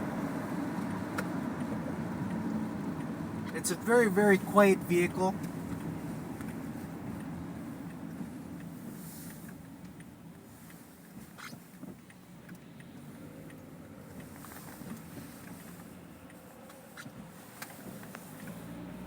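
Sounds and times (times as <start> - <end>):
tyre and road rumble: 0.0 - 9.7
faint ticks: 0.8 - 3.4, 5.4 - 19.0.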